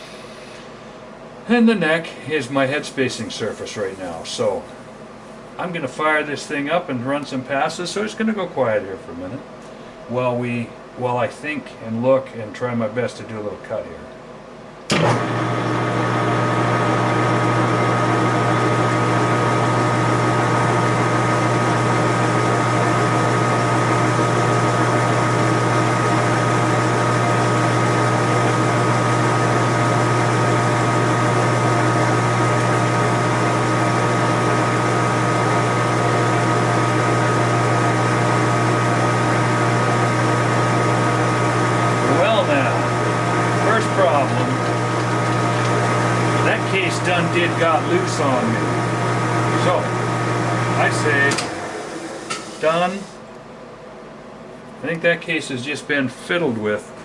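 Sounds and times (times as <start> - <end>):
lathe motor humming with whine: 14.9 - 53.2.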